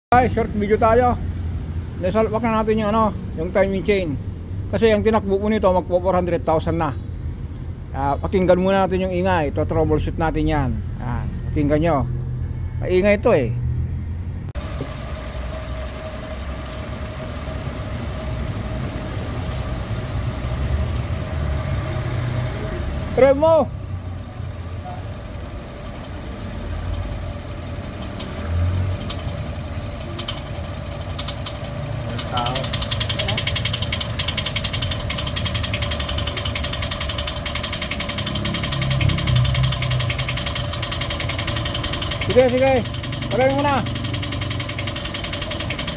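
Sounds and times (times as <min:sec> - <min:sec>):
high-pitched engine whine: 0:11.0 - 0:45.9
car engine running: 0:14.6 - 0:45.9.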